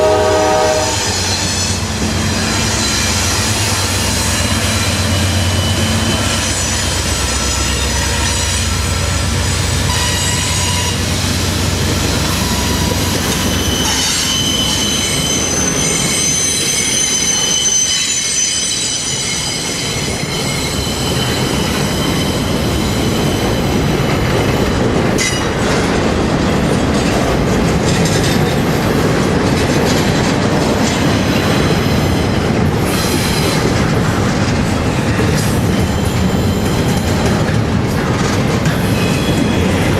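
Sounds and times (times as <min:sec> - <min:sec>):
train rumbling past: 0:00.0 - 0:39.9
high-pitched wheel squeal: 0:12.2 - 0:23.7
wheels clickety-clack: 0:19.0 - 0:39.9.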